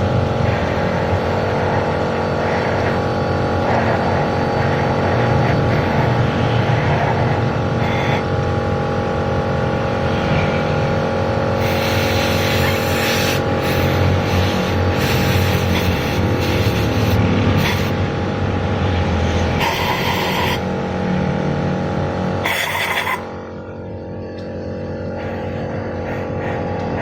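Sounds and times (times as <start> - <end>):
machine humming: 0.0 - 27.0
loud rushing hiss of air: 11.5 - 20.7.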